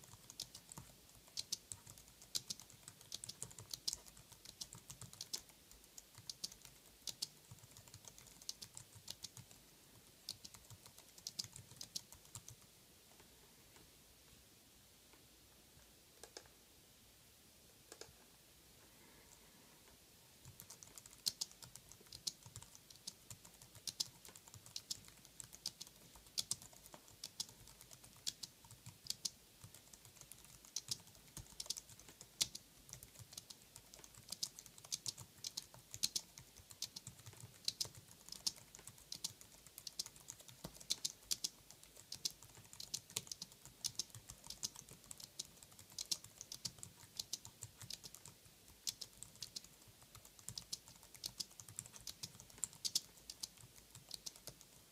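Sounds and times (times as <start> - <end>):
keyboard typing clicks: 0.0 - 9.6, 10.2 - 12.7, 16.2 - 16.5, 17.9 - 18.2, 20.4 - 54.8.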